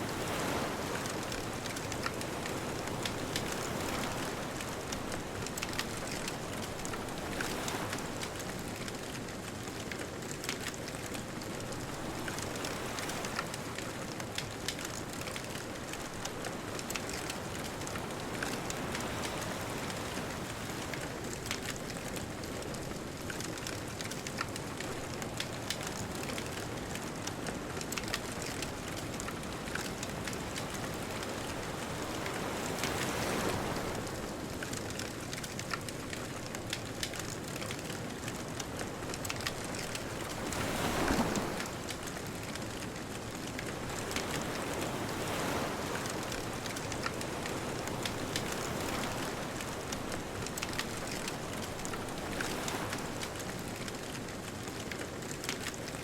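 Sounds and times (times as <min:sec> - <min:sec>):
bonfire crackling and popping: 0:00.2 - 0:56.0
distant ocean surf: 0:27.8 - 0:35.9, 0:37.0 - 0:55.8.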